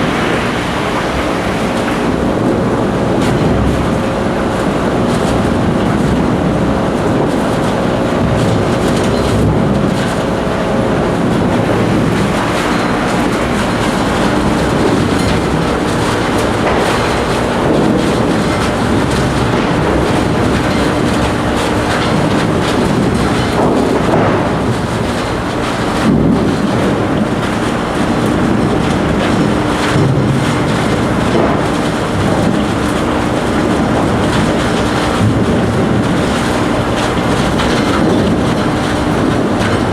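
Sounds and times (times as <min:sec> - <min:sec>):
wood chipper running: 0:00.0 - 0:39.9.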